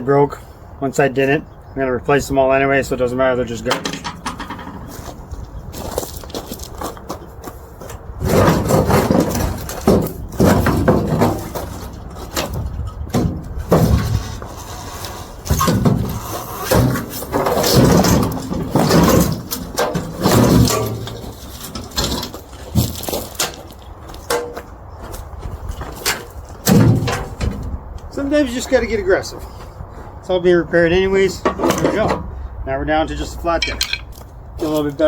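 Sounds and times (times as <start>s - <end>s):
metal panels banging: 3.5s - 5.2s, 8.2s - 24.7s, 25.9s - 28.7s, 33.5s - 34.2s
scraping and creaking: 3.6s - 32.3s, 33.4s - 35.0s.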